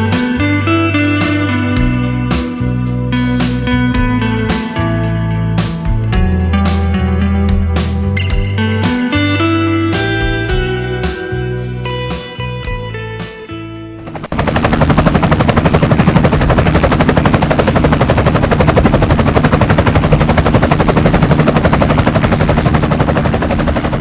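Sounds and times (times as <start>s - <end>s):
music: 0.0s - 24.0s
rotor chopping rattle: 14.0s - 24.0s.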